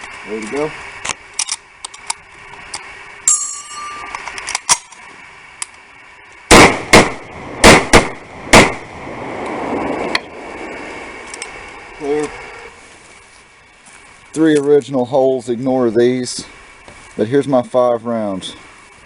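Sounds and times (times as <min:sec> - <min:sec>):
metallic ringing clang: 0:03.3 - 0:04.2
rifle shots: 0:06.5 - 0:08.9.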